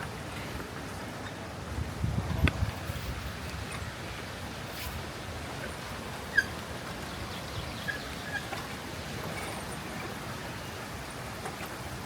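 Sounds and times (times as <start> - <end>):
river water rushing: 2.7 - 12.0
bird calls: 6.3 - 8.6.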